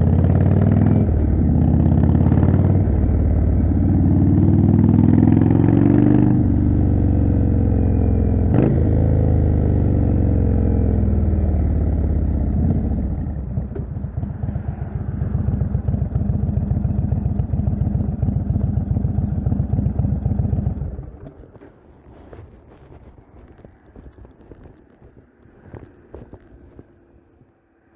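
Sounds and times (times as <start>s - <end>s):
motorcycle engine idling: 11.2s - 21.7s.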